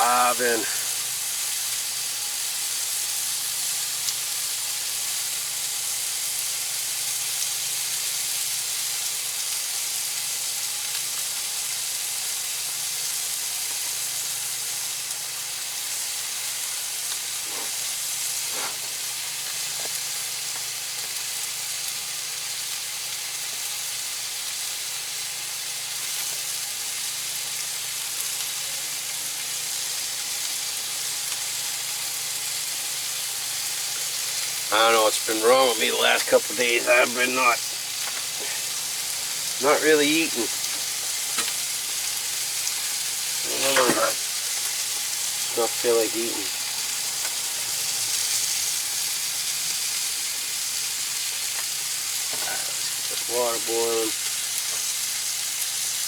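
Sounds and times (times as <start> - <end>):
fish sizzling in a pan: 0.0 - 56.0.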